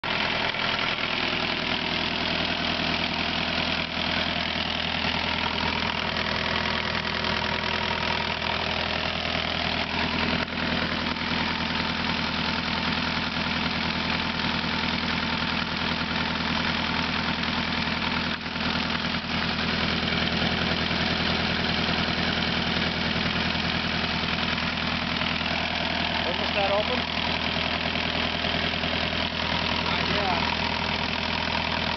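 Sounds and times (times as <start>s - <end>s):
diesel engine idling: 0.0s - 31.9s.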